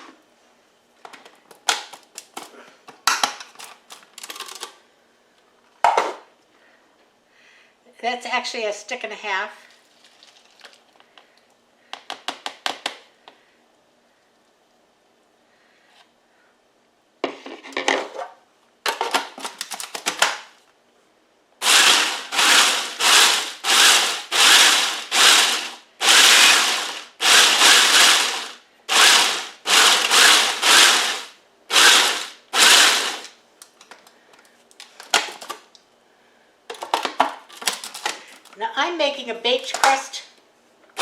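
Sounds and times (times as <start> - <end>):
food processor pulsing: 21.6 - 33.3.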